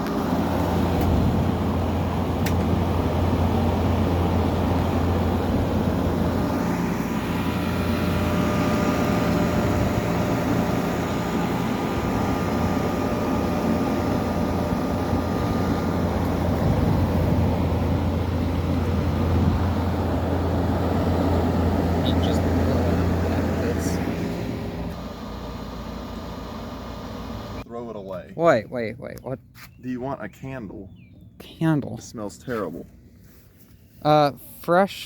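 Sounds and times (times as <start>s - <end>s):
fan rushing: 0.0s - 28.9s
air conditioner humming: 0.0s - 29.2s.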